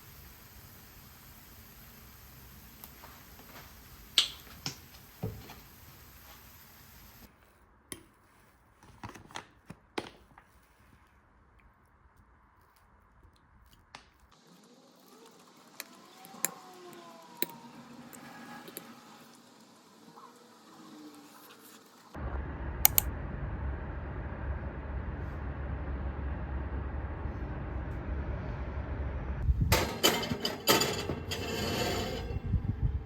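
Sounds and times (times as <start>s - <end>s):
background hiss: 0.0s - 7.4s.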